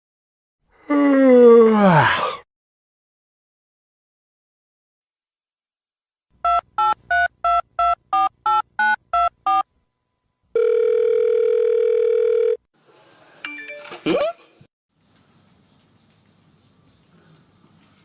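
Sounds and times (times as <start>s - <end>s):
keypad dialing beeps: 6.4s - 9.6s
steady phone tone: 6.4s - 9.6s, 10.6s - 12.6s.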